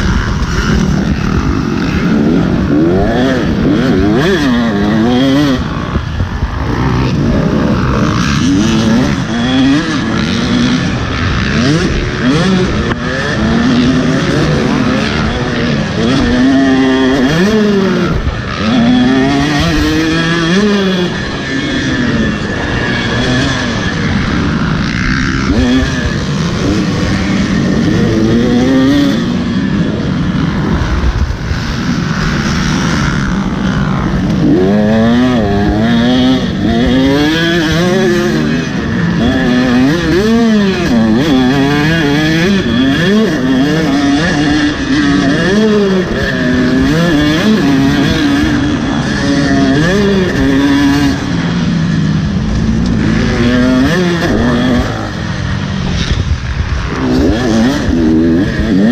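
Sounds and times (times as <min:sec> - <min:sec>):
dirt bike engine revving: 0:00.0 - 0:58.9.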